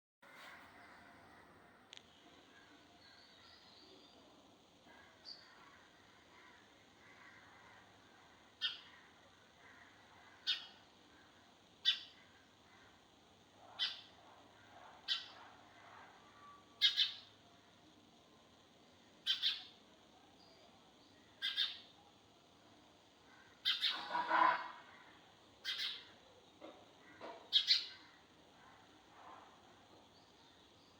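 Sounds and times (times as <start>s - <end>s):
sparrow chirping: 10.4s - 10.8s, 11.8s - 12.1s, 13.8s - 14.1s, 15.1s - 15.4s, 16.8s - 17.3s, 19.2s - 19.7s, 21.4s - 21.8s, 23.6s - 24.1s, 25.6s - 26.1s, 27.5s - 28.0s.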